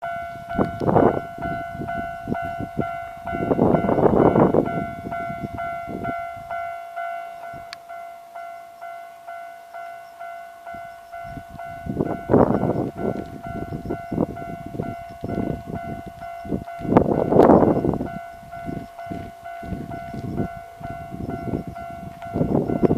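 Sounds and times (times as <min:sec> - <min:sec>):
electronic level-crossing bell ringing: 0:00.0 - 0:22.9
train rumbling and clacking: 0:00.0 - 0:22.9.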